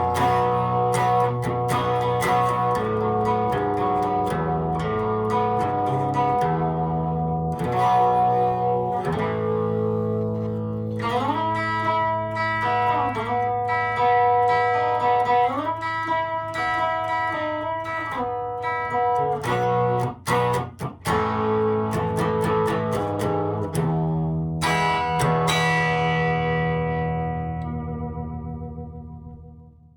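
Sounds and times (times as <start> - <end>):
electric guitar playing: 0.0 - 29.9.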